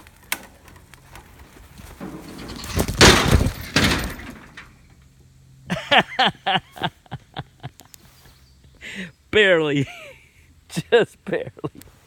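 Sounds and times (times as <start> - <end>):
tree cracking and crashing down: 0.0 - 4.6.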